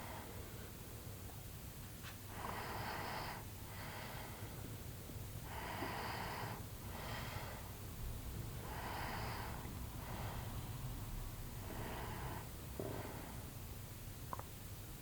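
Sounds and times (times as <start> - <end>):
person breathing heavily: 5.4 - 7.8, 8.6 - 10.6, 11.6 - 13.5.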